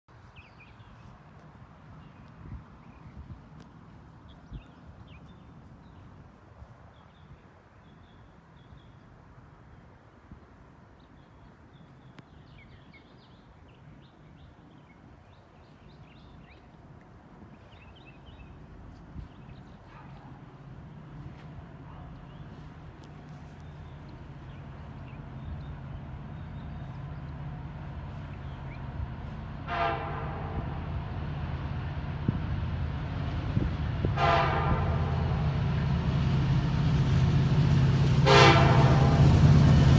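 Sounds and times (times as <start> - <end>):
faint outdoor rumble: 0.1 - 39.9
small birds chirping: 17.5 - 29.5
locomotive air horn blast: 29.6 - 31.2, 34.0 - 36.2, 37.2 - 39.9.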